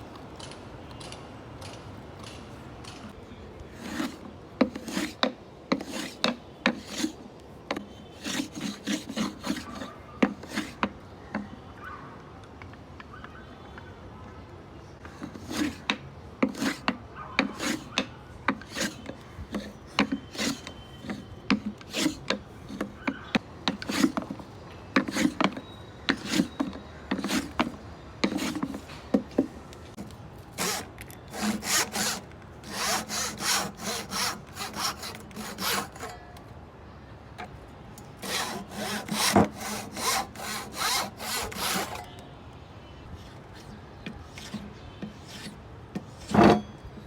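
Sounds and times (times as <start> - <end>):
hand saw cutting wood: 3.7 - 10.9, 15.2 - 24.4, 25.0 - 29.0, 30.5 - 36.2, 38.2 - 42.1.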